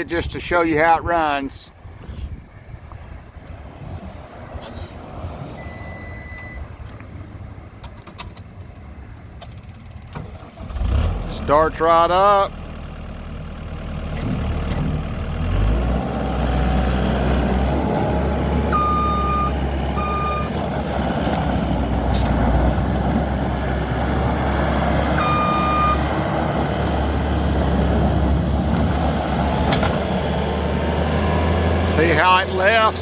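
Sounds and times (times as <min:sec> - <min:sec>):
backup alarm beeps: 0:05.6 - 0:06.7, 0:18.1 - 0:20.5, 0:25.2 - 0:26.0
diesel engine running: 0:08.6 - 0:33.0.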